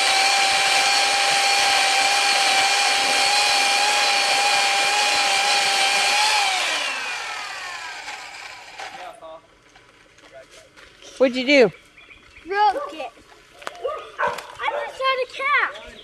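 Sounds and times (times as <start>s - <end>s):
electric chainsaw whining: 0.0s - 9.1s.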